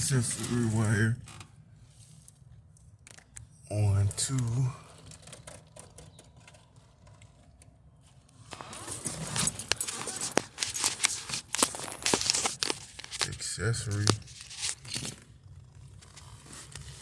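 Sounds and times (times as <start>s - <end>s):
wire rustling: 8.4s - 15.2s.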